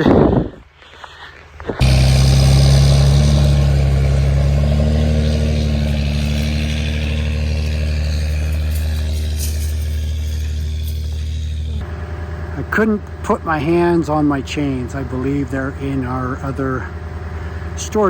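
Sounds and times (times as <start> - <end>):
vehicle engine running: 1.8 - 18.0.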